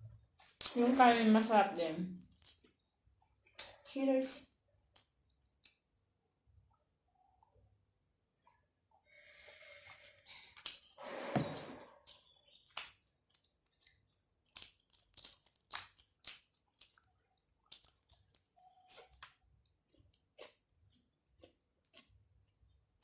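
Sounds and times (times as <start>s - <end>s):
wet chewing: 12.7s - 23.0s.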